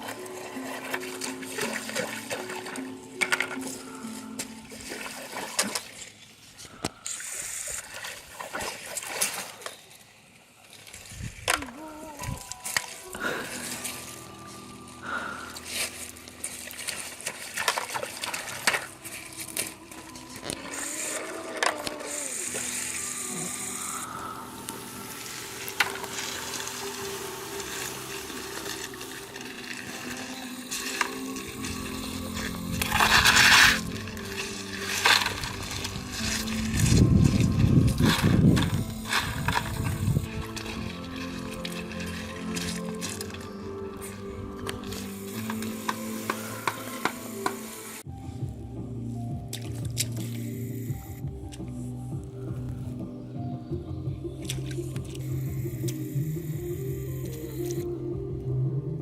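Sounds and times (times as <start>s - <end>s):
water splashing in a stream: 0.0s - 14.4s, 15.4s - 23.0s, 23.6s - 48.1s, 49.5s - 50.9s, 54.4s - 56.5s
water trickling: 0.0s - 48.1s.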